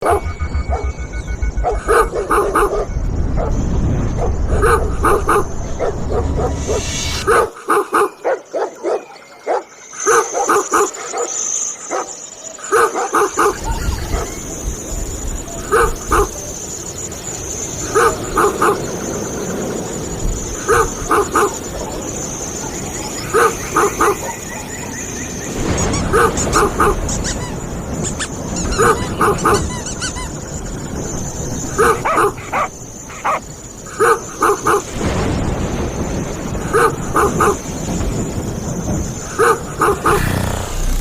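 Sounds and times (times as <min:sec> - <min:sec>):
low rumble: 0:00.0 - 0:07.4
dog barking: 0:01.6 - 0:03.6, 0:04.3 - 0:14.4, 0:15.6 - 0:16.4, 0:17.9 - 0:18.9, 0:20.7 - 0:22.1, 0:22.7 - 0:24.8, 0:26.1 - 0:27.4, 0:28.6 - 0:29.8, 0:31.7 - 0:34.9, 0:36.7 - 0:37.6, 0:39.4 - 0:40.4.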